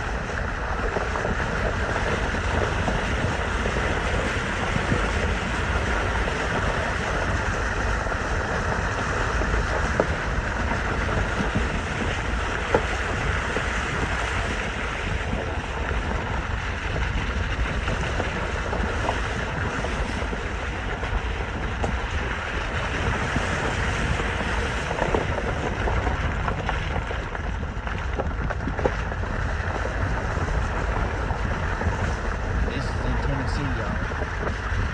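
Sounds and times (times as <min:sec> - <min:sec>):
road and wind noise: 0:00.0 - 0:34.9
wind buffeting microphone: 0:00.0 - 0:34.9.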